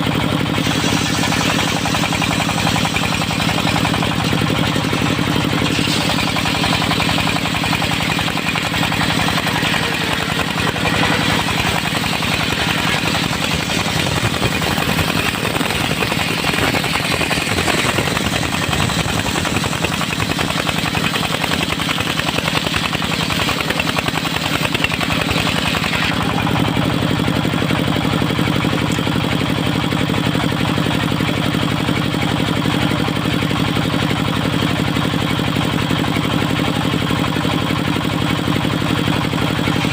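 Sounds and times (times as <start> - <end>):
circular blade cutting log: 0.0 - 35.2, 38.6 - 39.9
sawmill engine running: 0.0 - 39.9.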